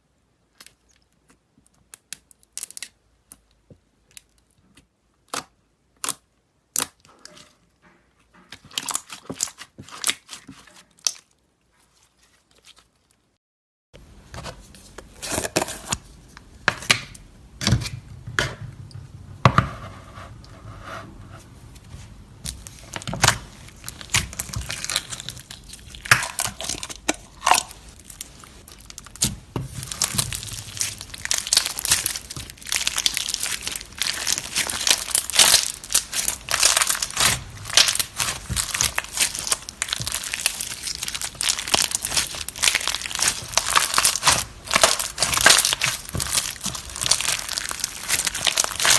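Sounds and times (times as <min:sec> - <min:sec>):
slime squelching and popping: 0:08.5 - 0:11.3, 0:22.4 - 0:48.9.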